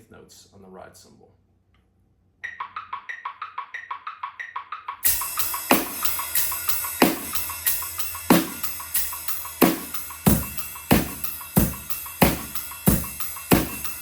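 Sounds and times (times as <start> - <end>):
drum kit playing: 2.4 - 14.0
metronome clicking: 2.4 - 14.0.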